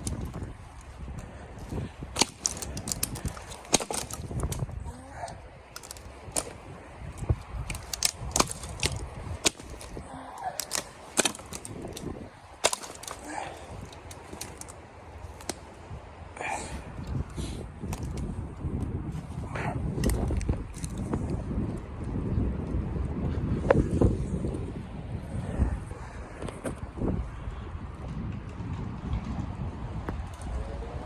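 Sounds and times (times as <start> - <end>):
sharp snaps and knocks: 0.0 - 15.9, 17.1 - 19.4, 20.0 - 21.3.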